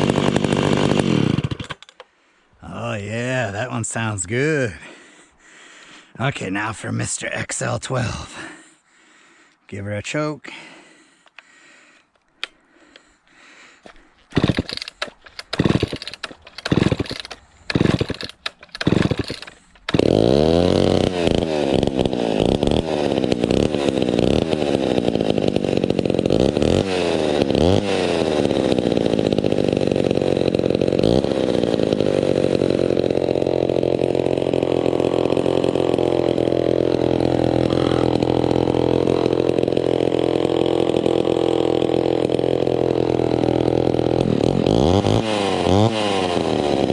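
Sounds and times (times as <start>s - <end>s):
starter rope pulls: 0.0s - 2.1s, 13.8s - 46.9s
chainsaw engine running: 0.0s - 2.8s, 10.6s - 46.9s.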